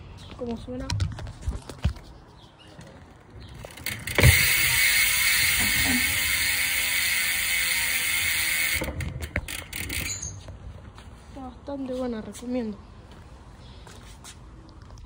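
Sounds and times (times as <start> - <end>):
bicycle hub freewheel buzzing: 3.6 - 10.5.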